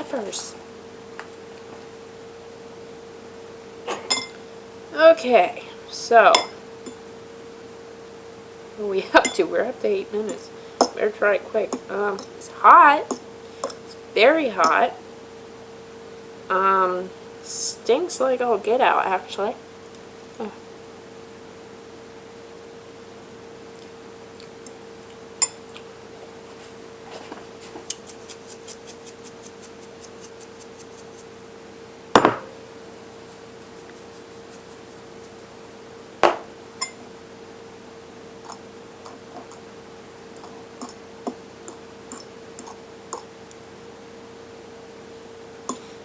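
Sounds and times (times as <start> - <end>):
steady hum: 0.0 - 46.0
utensil clinking on dish: 4.0 - 4.4.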